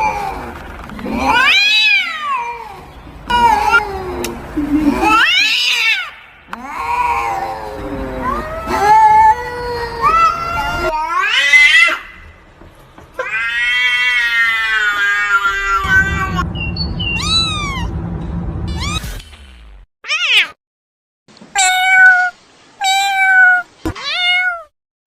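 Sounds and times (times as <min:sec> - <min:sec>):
cats meowing: 0:00.0 - 0:12.2, 0:13.2 - 0:16.4, 0:17.2 - 0:17.9, 0:18.7 - 0:19.0, 0:20.1 - 0:20.6, 0:21.6 - 0:24.7
high kitten meows: 0:13.2 - 0:16.4, 0:17.2 - 0:17.9, 0:18.7 - 0:19.0, 0:20.0 - 0:20.6, 0:21.6 - 0:24.7
long drawn-out meow: 0:21.6 - 0:24.7.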